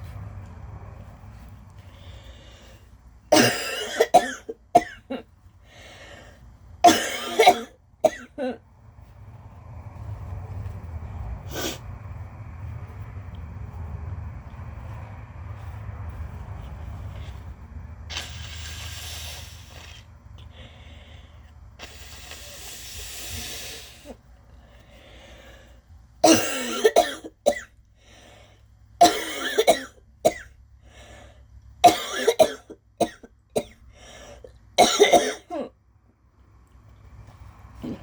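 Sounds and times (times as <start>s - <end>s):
woman coughing hard: 3.3s - 5.3s, 6.8s - 8.6s, 26.2s - 27.7s, 29.0s - 30.5s, 31.8s - 33.8s, 34.8s - 35.8s
breathy hissing sounds: 18.1s - 25.9s.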